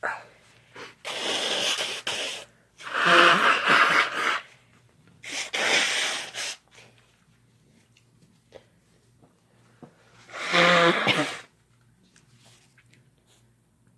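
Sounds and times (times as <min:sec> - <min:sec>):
person sneezing hard: 0:05.2 - 0:06.6, 0:10.3 - 0:11.5.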